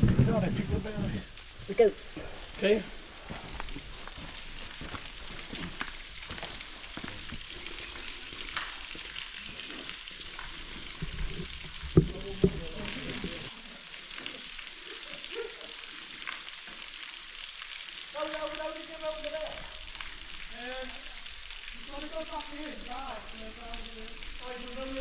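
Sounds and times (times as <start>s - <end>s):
steady crackling hiss: 0.0s - 25.0s
footsteps on loose slate: 2.5s - 9.1s.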